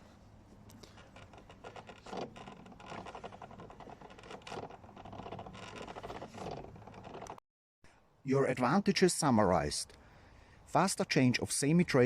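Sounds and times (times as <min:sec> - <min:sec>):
metallic clicking and scraping: 0:00.6 - 0:07.4.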